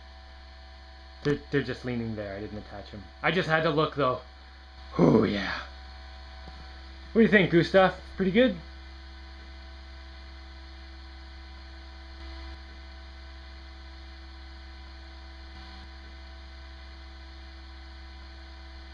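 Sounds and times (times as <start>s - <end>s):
electrical mains hum: 0.0s - 18.9s.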